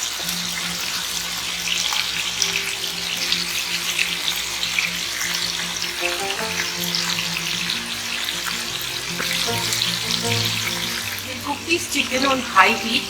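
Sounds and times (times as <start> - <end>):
chicken sizzling in hot oil: 0.0 - 13.0
soft background music: 0.0 - 13.0.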